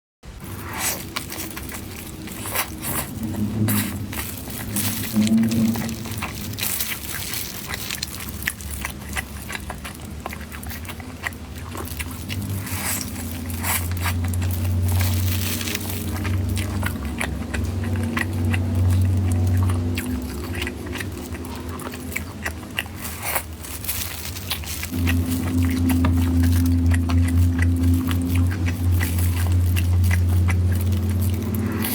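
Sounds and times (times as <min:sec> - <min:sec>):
low steady hum: 0:00.2 - 0:31.9
crunchy bites and chewing: 0:00.4 - 0:31.9.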